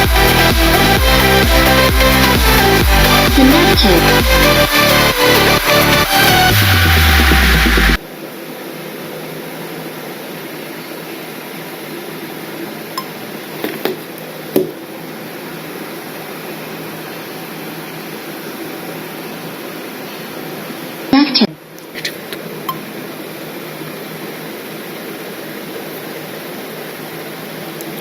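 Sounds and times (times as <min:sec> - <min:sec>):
electronic dance music: 0:00.0 - 0:08.0.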